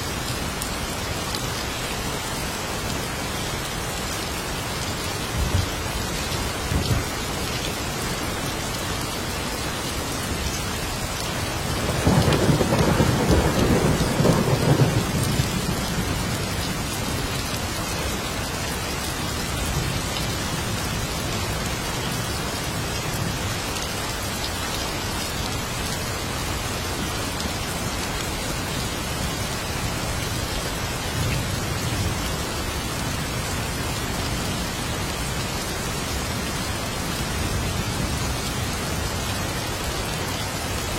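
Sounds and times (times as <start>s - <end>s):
heavy rain: 0.0s - 40.9s
thunder rumbling: 11.8s - 16.9s.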